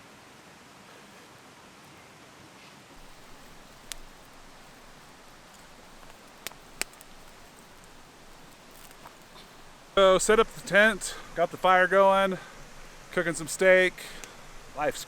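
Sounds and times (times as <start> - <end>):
sharp fire pops: 3.0 - 11.3
campfire crackling: 3.0 - 15.0
steak sizzling hiss: 3.0 - 15.0.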